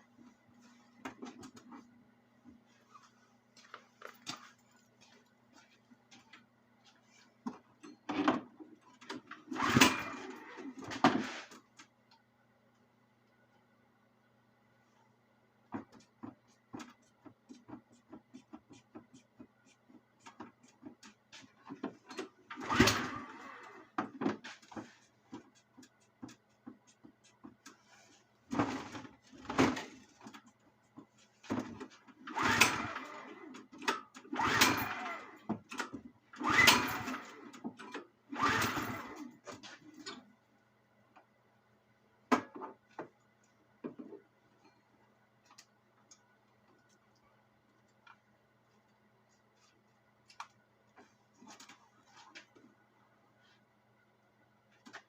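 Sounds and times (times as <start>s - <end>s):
pull-start rope yanked: 32.3s - 33.5s, 34.4s - 35.4s.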